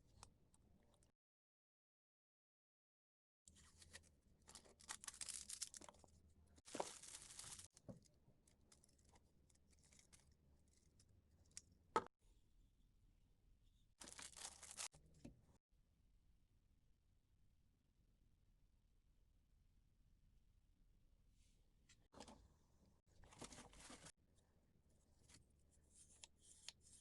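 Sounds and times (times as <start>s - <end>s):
rustling and tearing handling noises: 3.5s - 7.9s, 14.0s - 14.9s.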